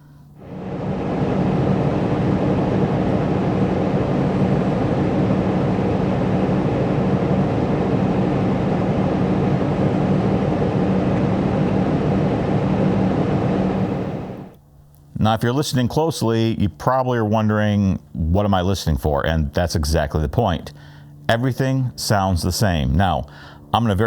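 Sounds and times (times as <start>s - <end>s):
van engine idling: 0.4s - 14.6s.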